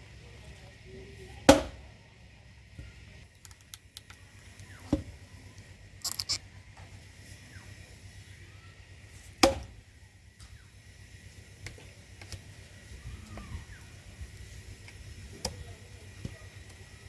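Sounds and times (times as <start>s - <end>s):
axe striking firewood: 1.5s - 1.8s, 9.4s - 9.8s.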